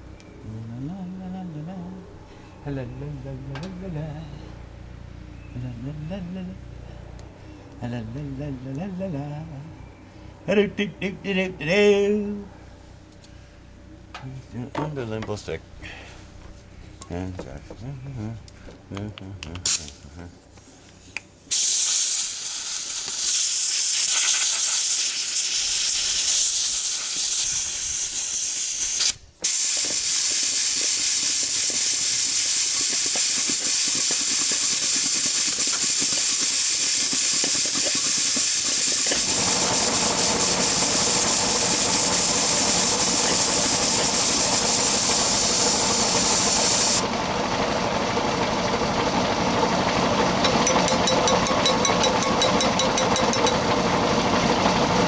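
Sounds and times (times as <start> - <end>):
loud steady hiss: 21.0 - 47.1
low rough machine noise: 30.8 - 55.0.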